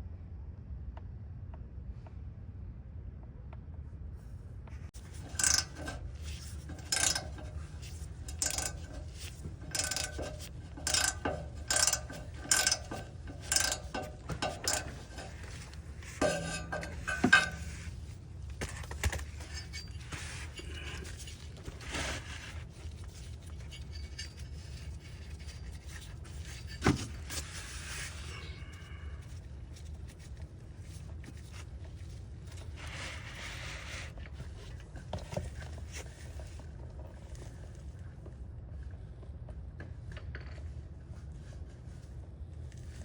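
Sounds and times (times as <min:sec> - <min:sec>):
steady low hum: 0:00.0 - 0:43.0
knocks and clatters: 0:05.0 - 0:28.3
metal tools clinking: 0:05.0 - 0:28.3.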